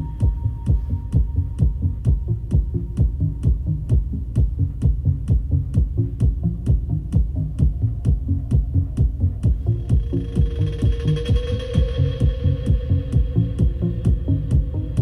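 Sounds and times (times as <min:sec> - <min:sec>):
electronic dance music: 0:00.0 - 0:15.0
held synth tone: 0:09.7 - 0:14.9.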